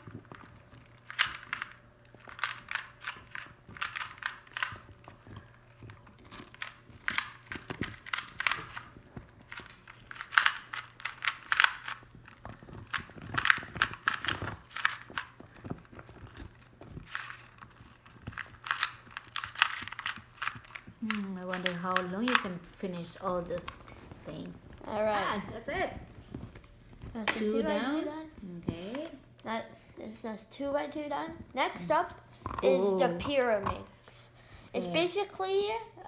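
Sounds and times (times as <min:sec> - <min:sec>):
puzzle cube clicking: 0:00.3 - 0:04.9, 0:06.3 - 0:08.9, 0:09.5 - 0:15.4, 0:17.0 - 0:22.7.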